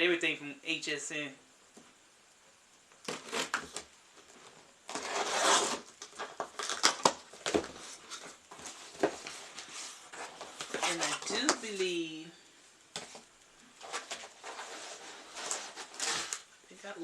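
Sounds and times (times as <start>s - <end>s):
packaging tearing: 3.0s - 7.6s, 13.8s - 16.5s
packaging crinkling: 3.0s - 11.8s, 13.0s - 16.5s.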